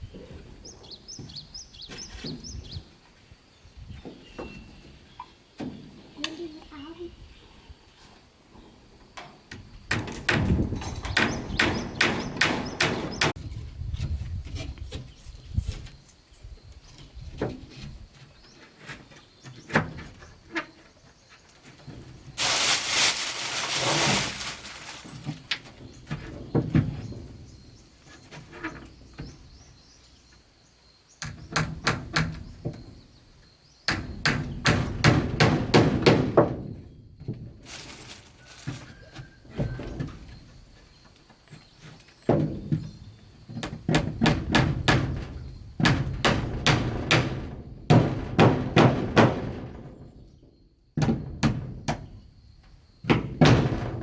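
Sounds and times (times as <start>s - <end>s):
wood being struck: 9.9s - 13.4s.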